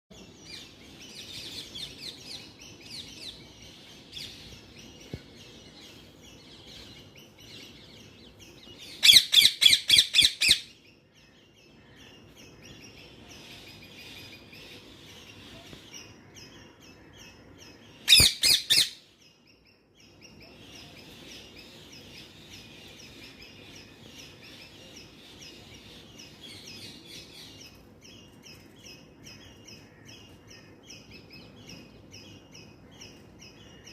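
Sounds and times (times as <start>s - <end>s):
birds chirping: 0.1s - 33.9s.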